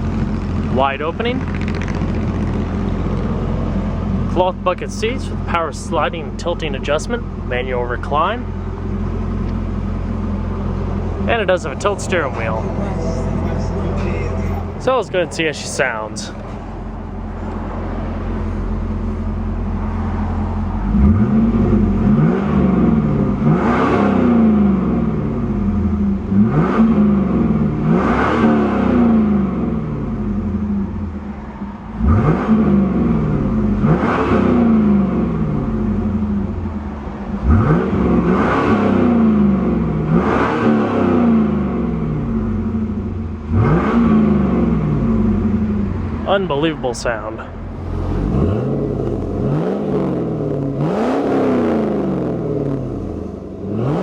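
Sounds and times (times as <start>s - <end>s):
car engine idling and revving: 0.0s - 54.0s.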